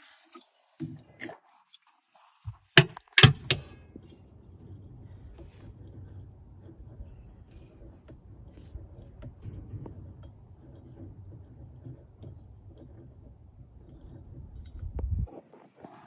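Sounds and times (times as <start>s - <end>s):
steady low rumble: 14.5s - 15.4s.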